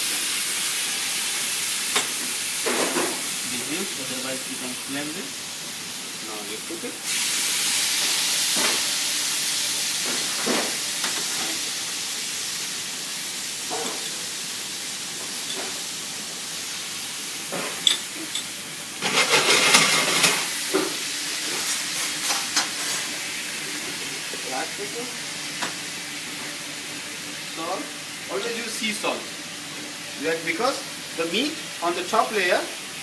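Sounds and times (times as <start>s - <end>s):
pan sizzling: 0.0s - 33.0s
utensil scraping pan: 19.0s - 20.5s.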